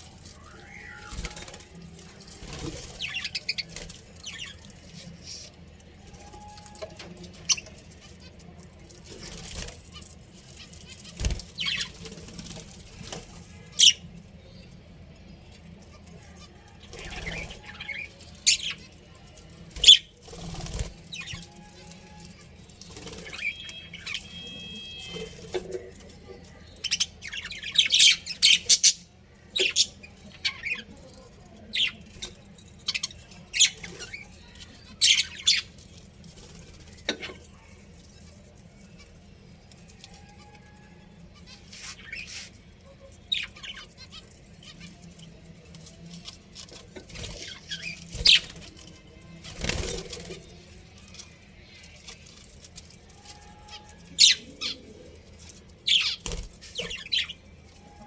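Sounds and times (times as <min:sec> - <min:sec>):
budgerigars chirping and squawking: 0:00.2 - 0:01.7, 0:02.4 - 0:05.5, 0:09.1 - 0:14.1, 0:16.4 - 0:31.0, 0:32.8 - 0:36.0, 0:39.8 - 0:45.3, 0:46.6 - 0:48.8, 0:51.0 - 0:58.0.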